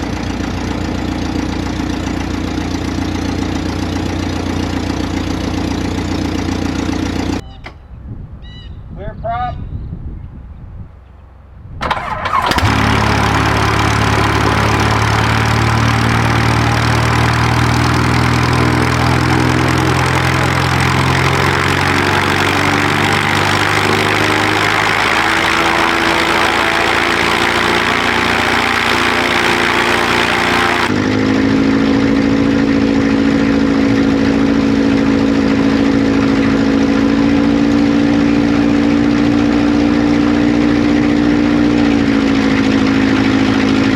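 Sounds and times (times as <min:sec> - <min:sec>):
light aircraft engine running: 0:00.0 - 0:07.5, 0:11.8 - 0:43.9
aircraft engine cranking: 0:11.8 - 0:30.9.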